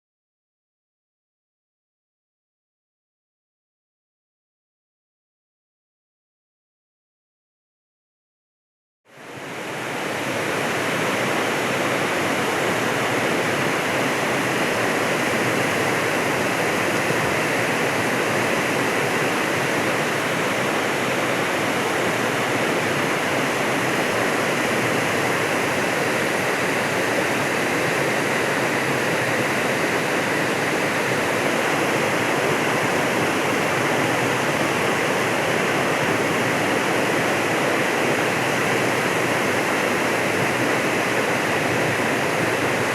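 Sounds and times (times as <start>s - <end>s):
waterfall rushing: 9.7s - 42.9s.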